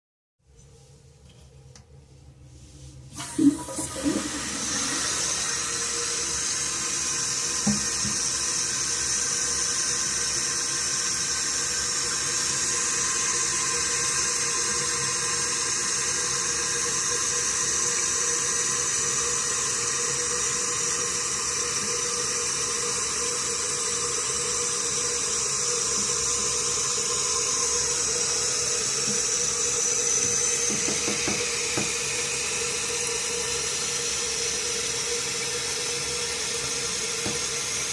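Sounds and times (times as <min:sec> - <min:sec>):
water hissing through fill valve: 0:03.1 - 0:37.9.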